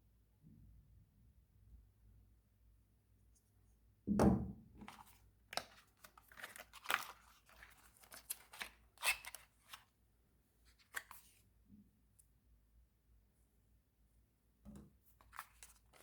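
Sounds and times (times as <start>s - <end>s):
packaging tearing: 4.9s - 9.8s, 15.2s - 16.0s.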